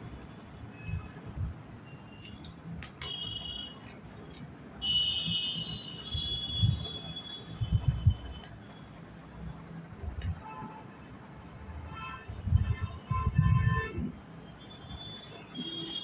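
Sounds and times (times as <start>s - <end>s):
close-miked eating sounds: 0.1s - 5.0s, 7.1s - 12.2s, 13.9s - 16.0s.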